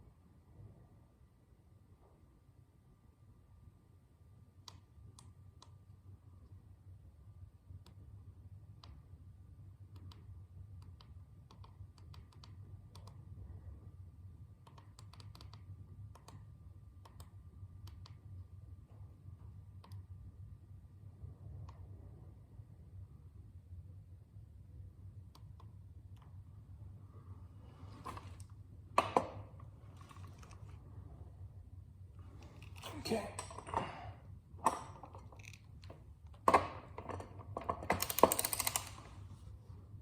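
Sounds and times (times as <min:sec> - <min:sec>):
low steady hum: 0:00.0 - 0:40.0
tools clicking and tapping: 0:34.6 - 0:39.1.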